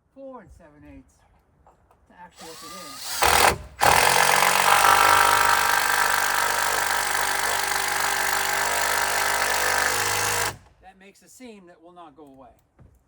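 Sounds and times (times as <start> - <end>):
power drill driving screw into wood: 2.4 - 10.8.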